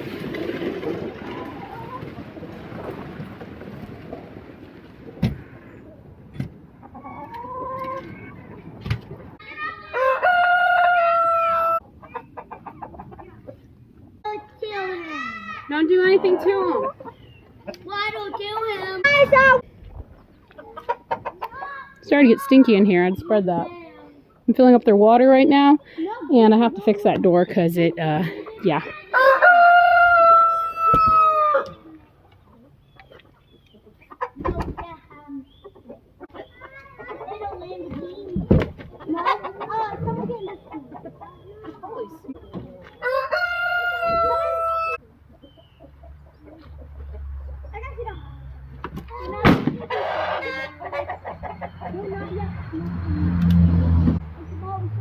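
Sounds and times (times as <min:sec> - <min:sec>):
rooster crowing: 0:09.9 - 0:11.8, 0:29.1 - 0:31.8, 0:43.0 - 0:45.0.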